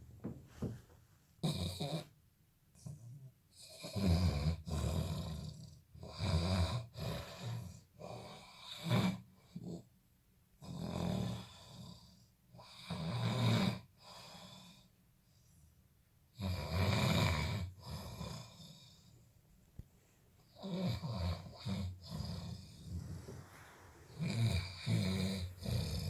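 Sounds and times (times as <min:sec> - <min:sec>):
person snoring: 0:20.6 - 0:26.0
quiet breathing: 0:21.4 - 0:26.0.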